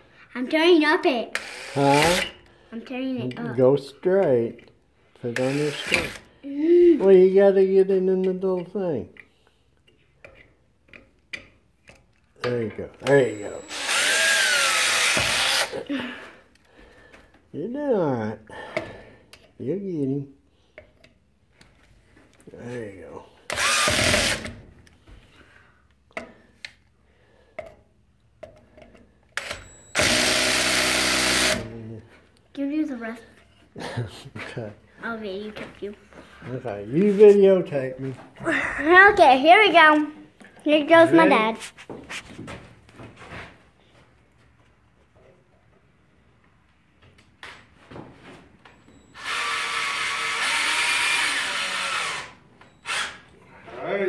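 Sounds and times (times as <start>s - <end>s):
power drill driving screw into wood: 1.3s - 2.4s, 5.4s - 6.3s, 13.1s - 15.8s, 23.5s - 24.6s, 29.4s - 31.7s, 49.1s - 53.3s.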